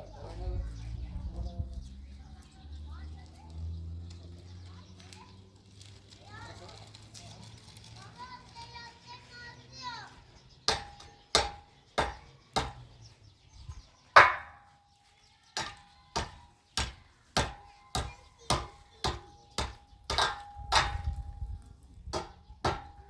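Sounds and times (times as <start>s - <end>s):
hammer blows on metal: 10.7s - 12.9s, 14.2s - 14.8s, 15.6s - 21.4s, 22.1s - 23.0s.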